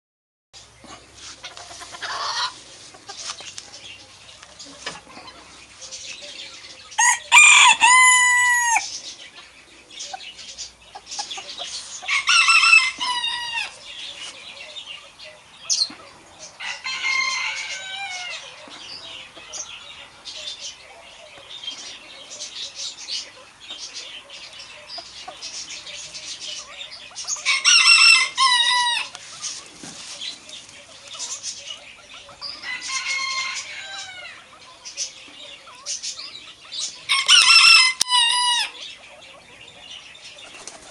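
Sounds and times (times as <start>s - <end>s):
faint clucks and chirps: 0.6s - 8.0s, 8.6s - 40.9s
rooster crowing: 7.0s - 8.9s, 12.1s - 13.8s, 16.6s - 18.5s, 27.5s - 29.2s, 32.6s - 34.4s, 37.1s - 38.8s.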